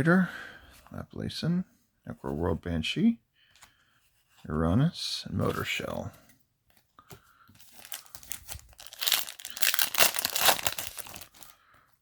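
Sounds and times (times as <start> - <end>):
foil wrapper tearing and crinkling: 7.6 - 11.5.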